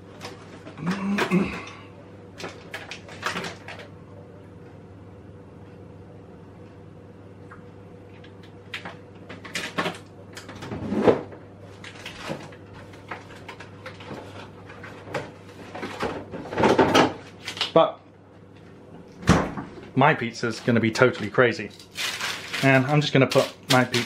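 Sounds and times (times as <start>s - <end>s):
low steady hum: 0.0s - 24.0s
kitchen items knocking and rattling: 13.1s - 17.2s.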